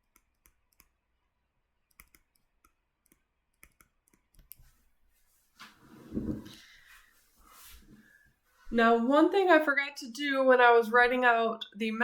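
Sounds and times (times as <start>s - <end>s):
rustling noise: 4.6s - 8.8s.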